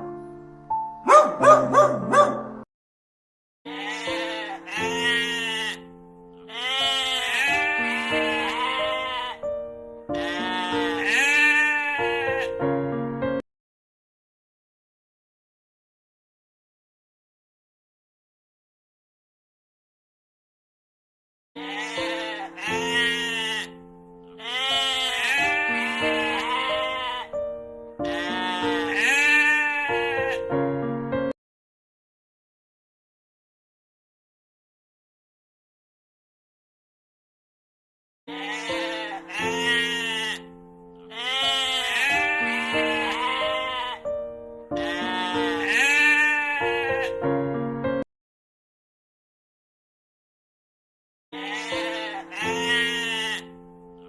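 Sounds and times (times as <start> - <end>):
background music with held notes: 0.0 - 2.6, 3.7 - 13.4, 21.6 - 31.4, 38.3 - 48.0, 51.4 - 54.0
sheep bleating: 3.7 - 9.5, 10.1 - 12.6, 21.6 - 27.4, 28.0 - 30.5, 38.3 - 47.2, 51.4 - 54.0.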